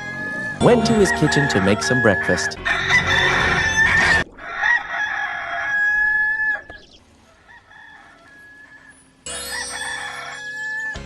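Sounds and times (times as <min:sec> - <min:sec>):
rooster crowing: 0:00.0 - 0:11.0.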